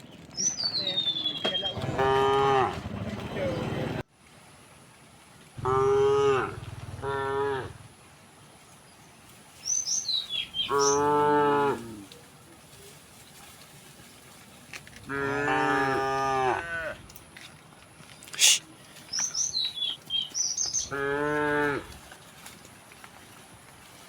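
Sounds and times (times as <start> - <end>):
bird chirping: 0.0 - 1.8, 9.6 - 11.2, 18.2 - 21.0
cattle mooing: 1.8 - 2.9, 5.6 - 7.9, 10.6 - 12.0, 15.1 - 17.1, 20.9 - 22.0.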